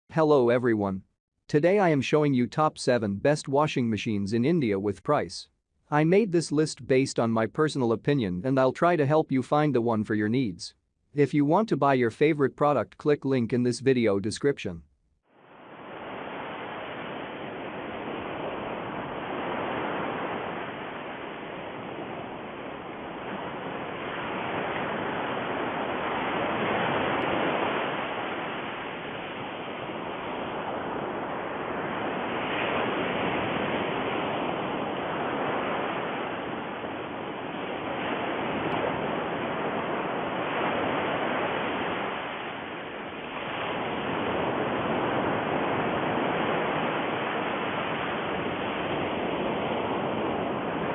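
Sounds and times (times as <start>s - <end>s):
rushing water noise: 15.4s - 50.9s.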